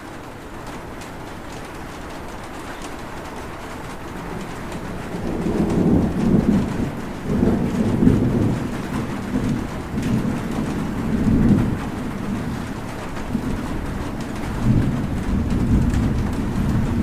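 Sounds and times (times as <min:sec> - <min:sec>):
steady rain: 0:00.0 - 0:17.0
thunder rolling: 0:03.8 - 0:17.0.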